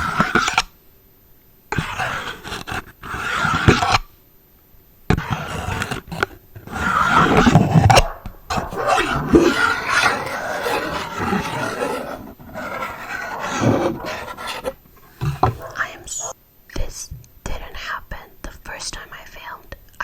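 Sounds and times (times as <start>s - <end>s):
dog growling: 6.7s - 15.8s.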